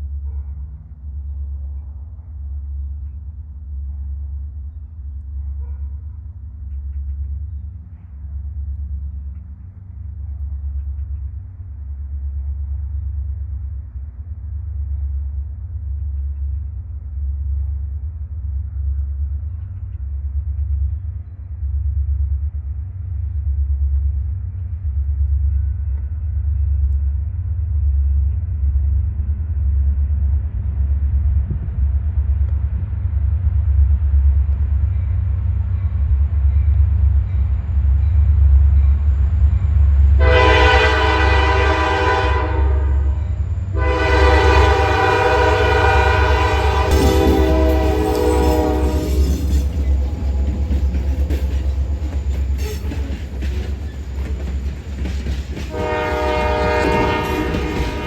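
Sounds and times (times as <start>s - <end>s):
locomotive engine rumble: 0.0s - 58.0s
locomotive air horn chord: 40.2s - 43.2s, 43.8s - 51.4s, 55.7s - 58.0s.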